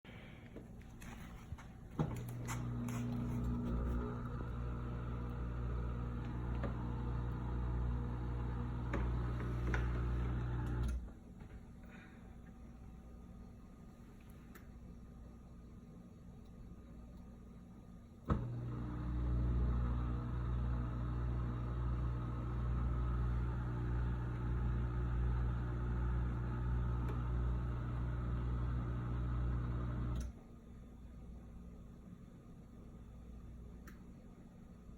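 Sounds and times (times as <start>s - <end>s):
dishwasher humming: 1.9s - 11.0s, 18.3s - 30.3s.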